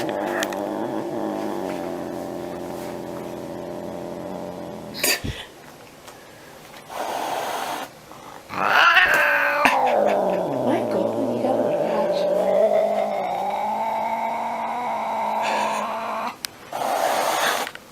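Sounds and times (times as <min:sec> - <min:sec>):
cat growling: 0:00.0 - 0:05.5, 0:08.5 - 0:17.7
cat spitting and hissing: 0:00.0 - 0:05.5, 0:08.5 - 0:17.7
cat yowling: 0:08.5 - 0:16.4.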